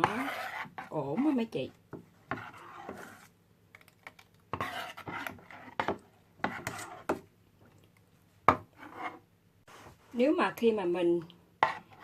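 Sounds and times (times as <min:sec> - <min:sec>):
utensil scraping batter in bowl: 0:00.0 - 0:07.3, 0:08.6 - 0:09.3, 0:11.6 - 0:12.0.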